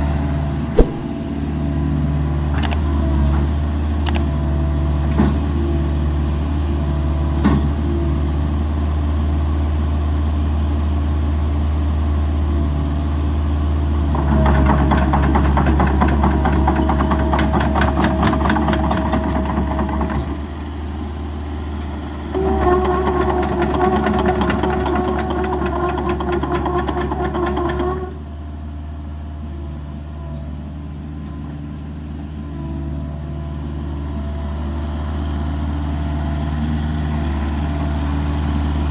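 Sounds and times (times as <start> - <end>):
engine clatter under load: 1.8 - 38.9
diesel engine running: 28.2 - 38.9.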